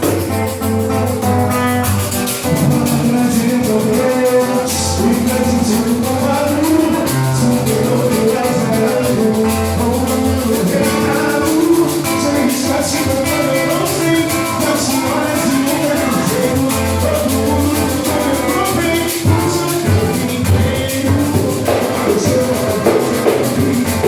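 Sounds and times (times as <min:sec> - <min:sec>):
held pitched notes: 0:00.0 - 0:24.0
percussion in a steady rhythm: 0:00.0 - 0:24.0
voices singing: 0:00.0 - 0:24.0.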